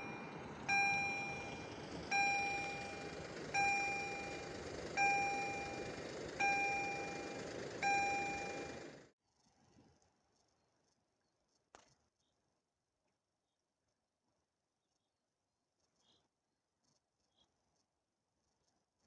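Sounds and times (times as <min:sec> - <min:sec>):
level crossing bell dinging: 0:00.0 - 0:08.8.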